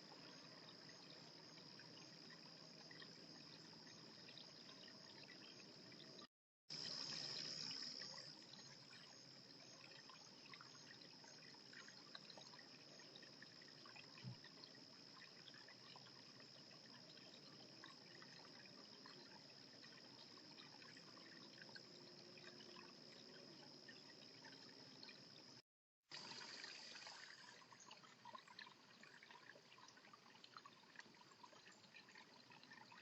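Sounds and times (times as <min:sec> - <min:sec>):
faint trickling water: 0:00.0 - 0:33.0
high-pitched insect-like hum: 0:06.8 - 0:25.6
small ticks: 0:30.5 - 0:33.0.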